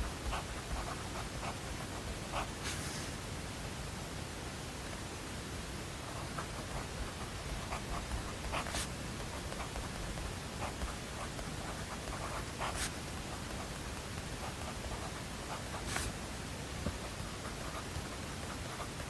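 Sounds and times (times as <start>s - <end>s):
white-noise hiss: 0.0s - 19.0s
writing on paper: 0.1s - 3.1s, 6.1s - 16.2s, 16.9s - 19.0s.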